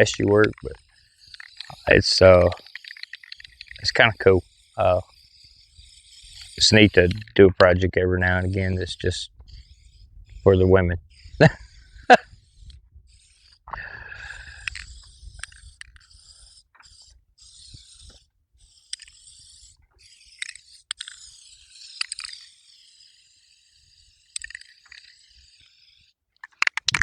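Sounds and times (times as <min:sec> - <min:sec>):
paintbrush scraping on cardboard: 0:00.0 - 0:26.2.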